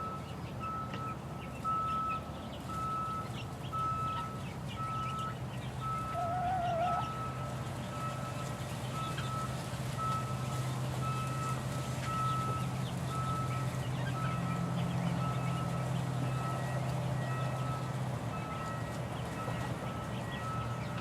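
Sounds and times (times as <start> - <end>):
engine humming: 0.0 - 21.0
reversing alarm beeping: 0.0 - 21.0.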